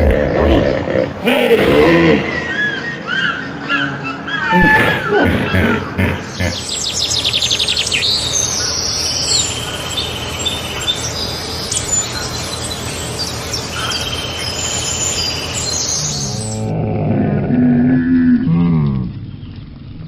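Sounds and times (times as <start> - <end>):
birds singing and calling: 0.0 - 17.0
steady background noise: 0.0 - 17.1.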